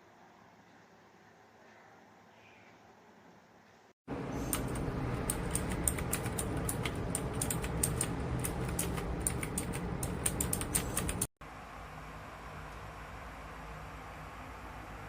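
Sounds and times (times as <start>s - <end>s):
mechanical keyboard typing: 4.4s - 11.3s.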